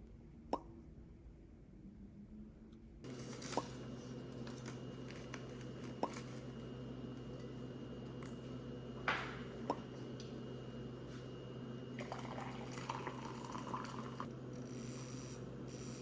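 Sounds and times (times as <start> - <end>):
electrical hum: 0.0 - 16.0.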